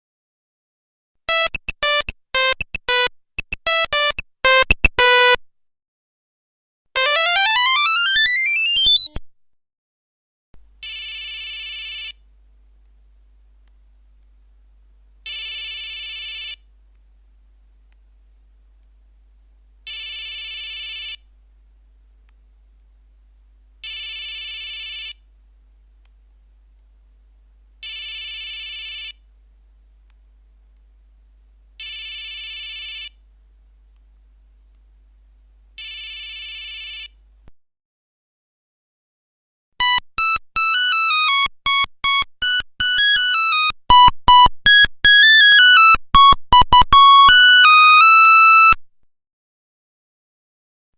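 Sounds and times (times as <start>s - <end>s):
phone alert tone: 1.3s - 5.4s, 39.8s - 48.8s.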